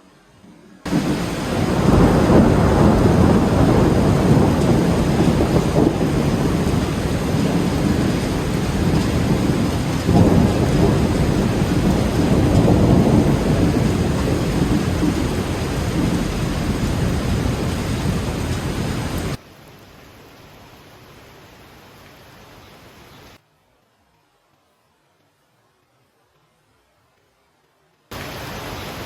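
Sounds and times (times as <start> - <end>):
steady rain: 0.3 - 29.0
rolling thunder: 0.9 - 19.4.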